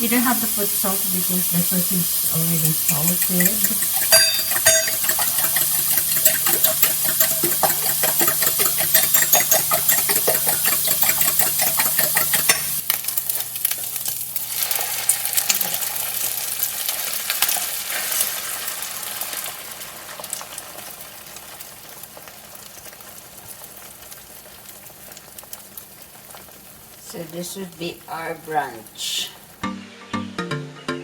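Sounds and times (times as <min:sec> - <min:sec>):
eggs sizzling in a frying pan: 0:00.0 - 0:29.6
fork beating eggs in a bowl: 0:02.0 - 0:12.8.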